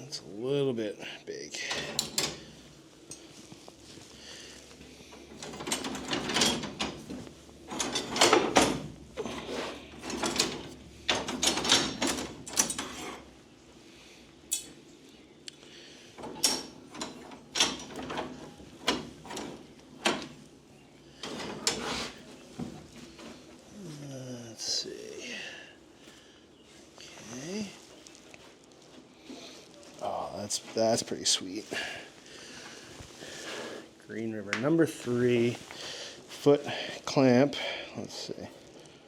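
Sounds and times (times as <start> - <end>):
metal tongs clanking and scraping: 1.7 - 2.4, 9.2 - 13.2, 14.5 - 14.8
sharp metal clicks: 14.5 - 14.8.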